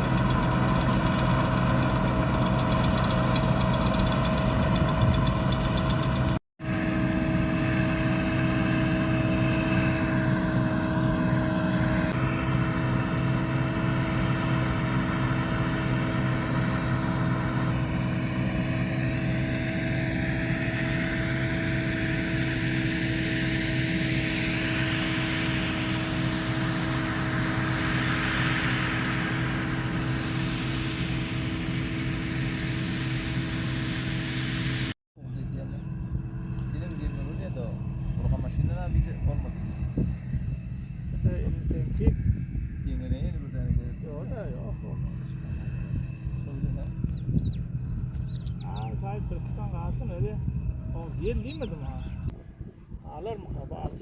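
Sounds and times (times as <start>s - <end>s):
combine harvester engine running: 0.0s - 54.0s.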